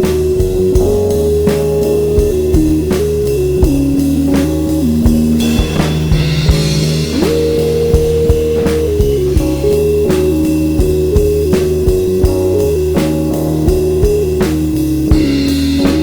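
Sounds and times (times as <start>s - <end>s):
bass: 0.0s - 16.0s
drum kit beat: 0.0s - 16.0s.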